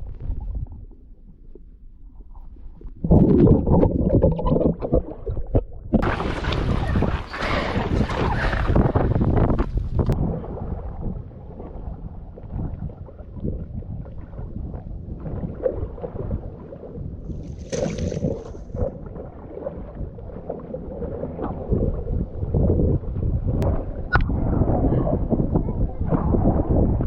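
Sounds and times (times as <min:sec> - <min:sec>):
water splashing and sloshing: 0:00.0 - 0:27.0
wind buffeting microphone: 0:05.6 - 0:27.0.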